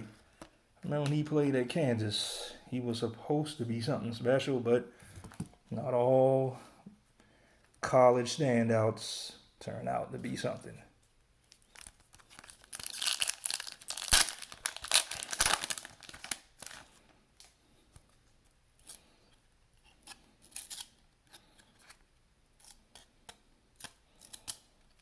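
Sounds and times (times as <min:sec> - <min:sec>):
wrapper tearing open: 0:11.5 - 0:17.6, 0:20.0 - 0:21.9
cards rustling and clicking: 0:11.5 - 0:25.0.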